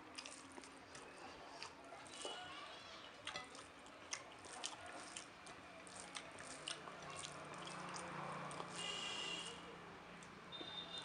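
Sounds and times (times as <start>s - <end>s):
wet chewing: 0.0s - 2.4s, 3.2s - 8.8s.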